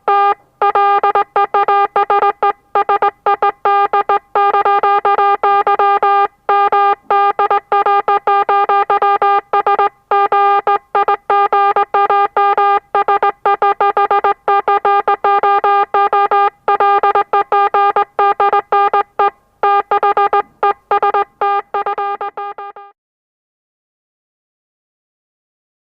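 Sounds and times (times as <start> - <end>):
morse code tone beeping: 0.0 - 23.0.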